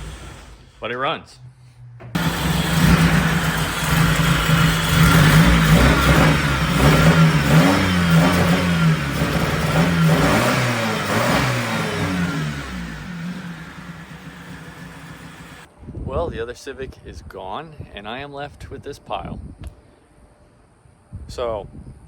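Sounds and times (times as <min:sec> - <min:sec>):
car engine running roughly: 0:02.2 - 0:15.7.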